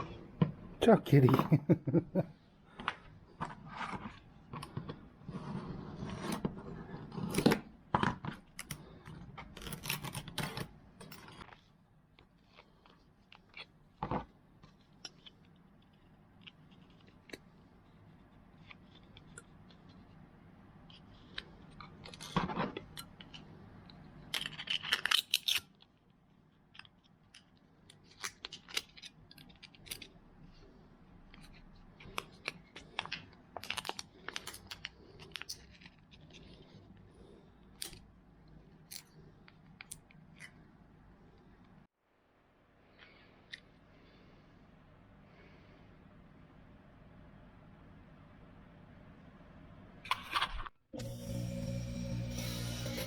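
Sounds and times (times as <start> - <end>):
small objects clicking and rustling: 20.9 - 30.6, 31.3 - 36.8
loud scrape: 51.0 - 53.0.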